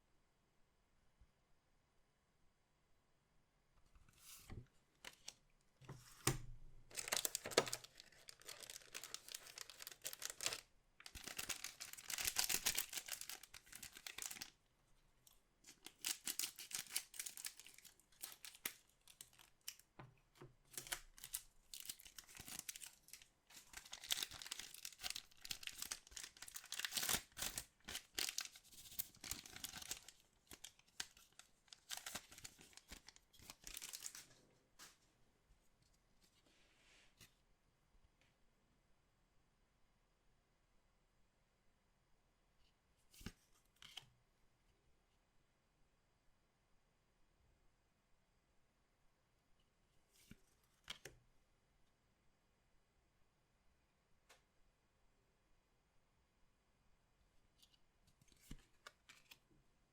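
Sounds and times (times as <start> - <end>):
card wrappers torn and crinkled: 6.9 - 14.5, 15.7 - 19.8, 20.7 - 34.2.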